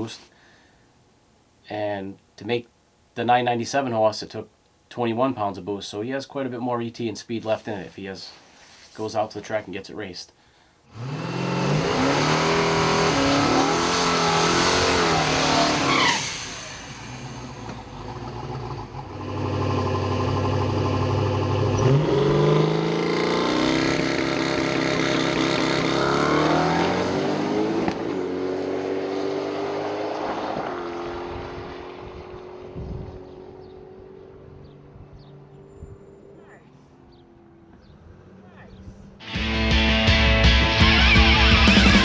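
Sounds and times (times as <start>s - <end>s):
car engine revving: 10.9s - 34.8s.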